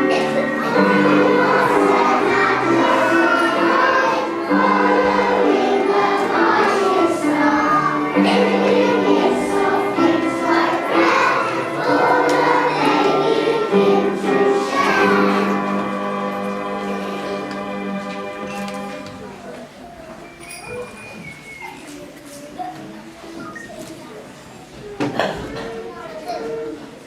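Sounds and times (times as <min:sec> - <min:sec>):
instrumental accompaniment: 0:00.0 - 0:19.6
children's choir singing: 0:00.0 - 0:21.2.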